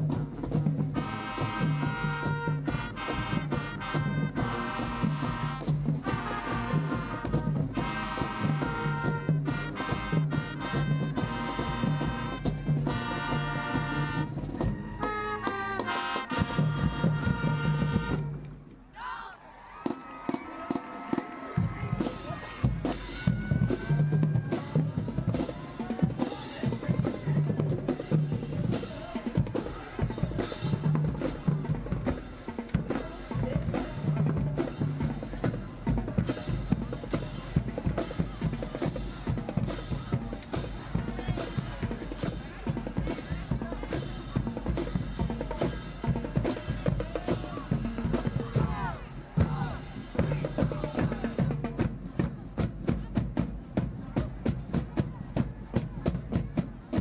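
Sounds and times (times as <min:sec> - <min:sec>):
marching drumline playing: 0:00.0 - 0:18.9, 0:19.8 - 0:57.0
low bass drum notes: 0:21.6 - 0:57.0.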